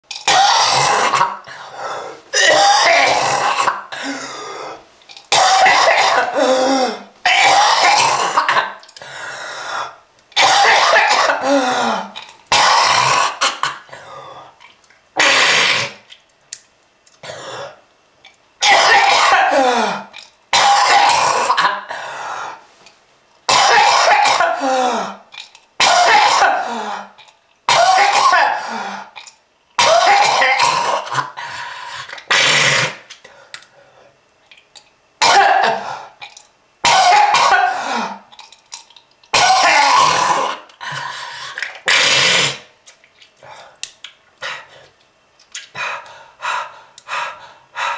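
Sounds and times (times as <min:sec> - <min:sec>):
person coughing hard: 0:00.2 - 0:01.4, 0:02.3 - 0:04.4, 0:05.3 - 0:08.8, 0:10.4 - 0:13.9, 0:15.2 - 0:16.0, 0:18.6 - 0:22.0, 0:23.5 - 0:25.2, 0:25.8 - 0:28.9, 0:29.8 - 0:31.4, 0:32.3 - 0:33.0, 0:35.2 - 0:36.1, 0:36.8 - 0:38.2, 0:39.3 - 0:40.7.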